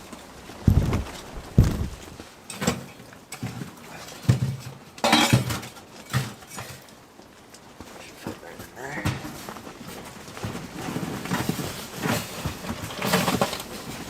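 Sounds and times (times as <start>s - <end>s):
knocks and thuds: 0.6s - 2.2s.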